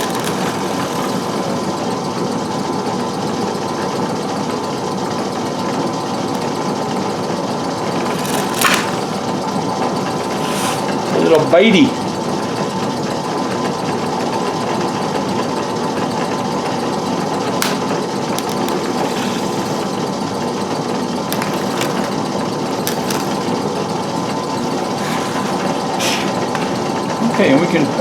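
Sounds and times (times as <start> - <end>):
drill press motor humming: 0.0 - 1.9, 17.6 - 27.3.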